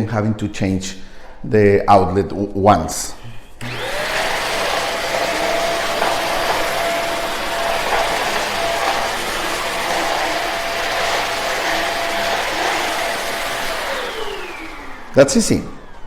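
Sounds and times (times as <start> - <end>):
vacuum cleaner motor whine: 3.6 - 16.0.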